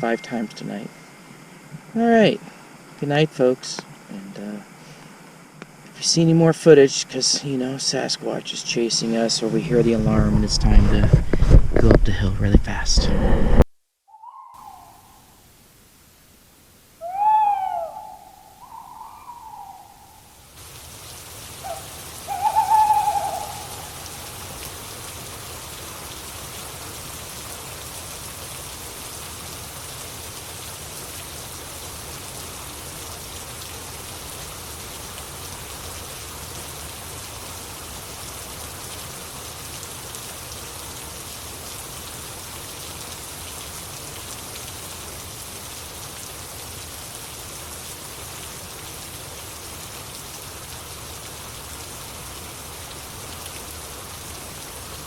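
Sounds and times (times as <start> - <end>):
rain falling on a tarp: 9.2 - 13.6, 20.4 - 55.0.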